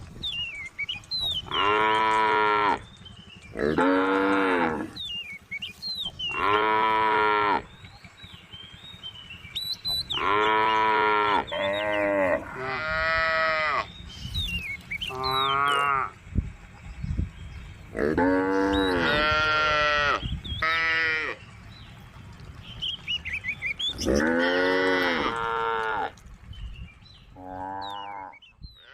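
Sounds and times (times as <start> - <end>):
cows mooing: 1.4 - 2.9, 3.5 - 5.0, 6.2 - 7.8, 9.9 - 14.0, 15.0 - 16.2, 17.8 - 21.6, 23.8 - 26.3, 27.3 - 28.9.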